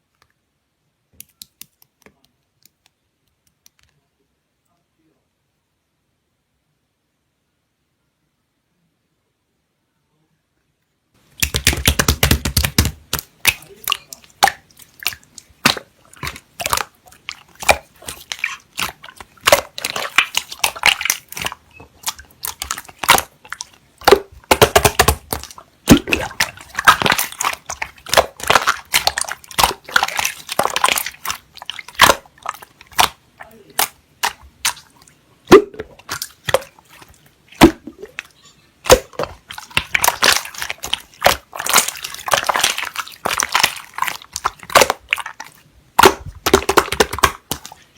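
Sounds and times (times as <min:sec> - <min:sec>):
slime squished by hand: 0:11.3 - 0:47.9.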